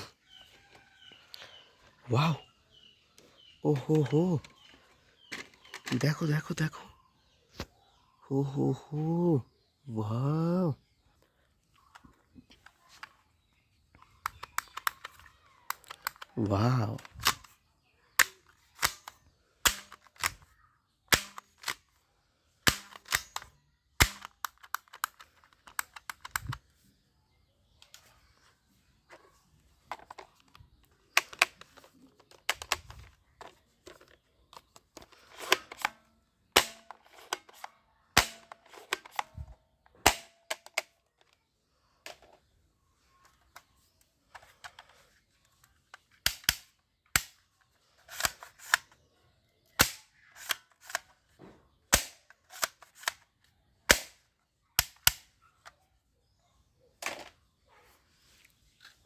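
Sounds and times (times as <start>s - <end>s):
toy guns firing: 14.3s - 17.6s, 18.2s - 20.5s, 21.1s - 21.9s, 22.6s - 26.6s, 35.0s - 41.0s, 46.3s - 47.4s, 49.7s - 51.2s, 51.9s - 53.3s, 53.9s - 55.4s.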